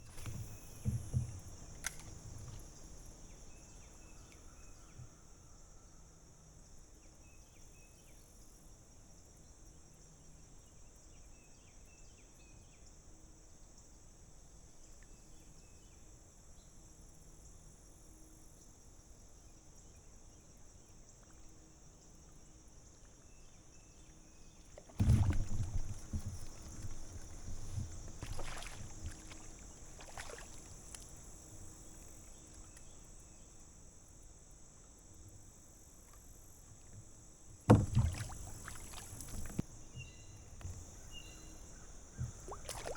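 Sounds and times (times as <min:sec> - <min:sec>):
knocking on kayak: 0:00.2 - 0:02.0, 0:25.0 - 0:30.5, 0:37.7 - 0:41.0, 0:42.2 - 0:42.9
water splashing: 0:24.8 - 0:32.3, 0:37.7 - 0:42.9.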